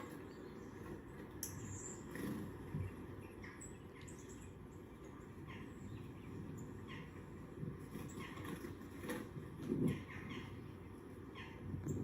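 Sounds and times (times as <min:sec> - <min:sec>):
birds chirping from tv speakers: 0:00.0 - 0:12.0
low steady background noise: 0:00.0 - 0:12.0.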